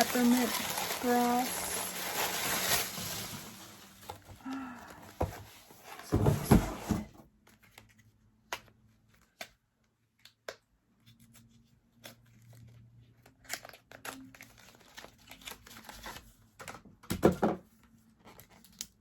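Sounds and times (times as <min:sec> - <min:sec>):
packaging rustling and crinkling: 0:00.0 - 0:04.6.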